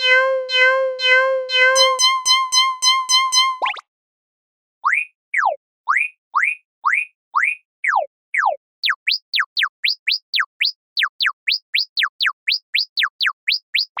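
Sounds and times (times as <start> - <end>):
synthesized cartoon chirps: 0.0 - 3.8, 7.9 - 14.0.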